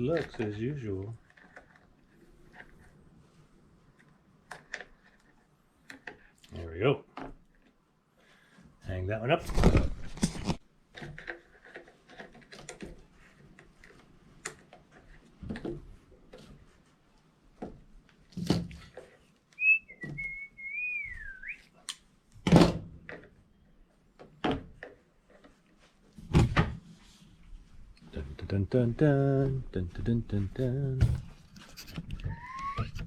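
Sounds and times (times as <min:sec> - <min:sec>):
person whistling: 0:19.6 - 0:21.7, 0:32.3 - 0:33.0
knocks and thumps from handling: 0:26.2 - 0:26.9, 0:30.9 - 0:32.4.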